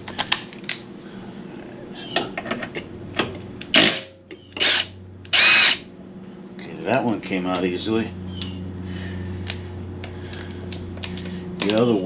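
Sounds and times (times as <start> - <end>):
rapid ratcheting of wrench: 3.8 - 5.8.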